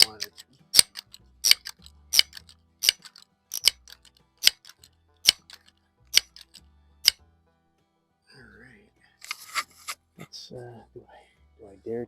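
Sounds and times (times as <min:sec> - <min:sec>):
air rifle pump lever clacks: 0:00.0 - 0:07.2.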